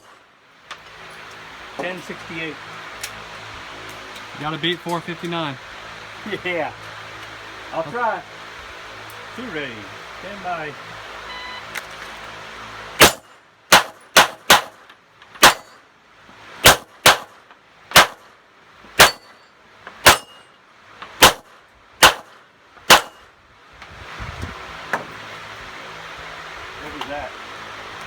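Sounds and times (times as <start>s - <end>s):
pistol shots: 13.0s - 14.8s, 15.4s - 15.8s, 16.6s - 18.3s, 19.0s - 19.4s, 20.0s - 20.4s, 21.2s - 23.2s
steel plates clanging: 19.0s - 20.5s.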